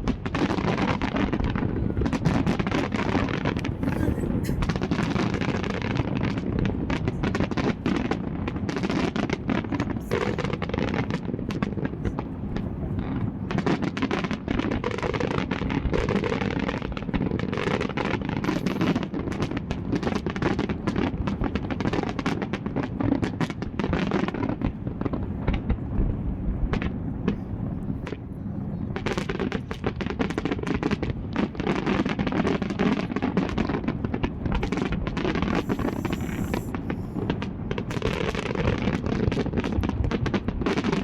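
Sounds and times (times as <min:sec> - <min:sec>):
fireworks bangs and crackles: 0:00.0 - 0:41.0
low rumble: 0:01.2 - 0:08.7.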